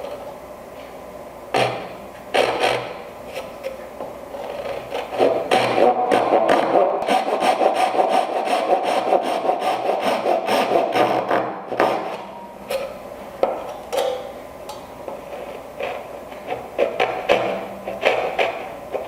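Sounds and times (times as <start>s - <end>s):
hand saw cutting wood: 2.4s - 3.6s, 4.4s - 12.2s, 15.8s - 19.0s.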